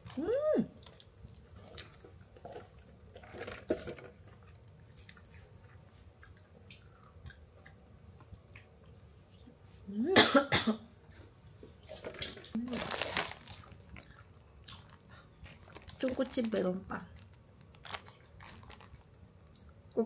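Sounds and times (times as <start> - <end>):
person chewing: 4.4 - 9.0, 12.7 - 16.0.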